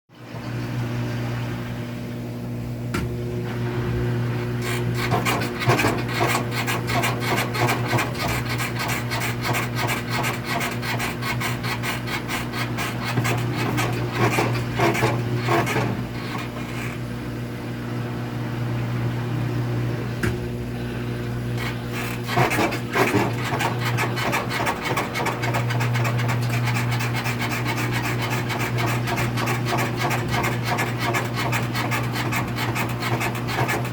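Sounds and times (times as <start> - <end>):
low machine hum: 0.2 - 33.9.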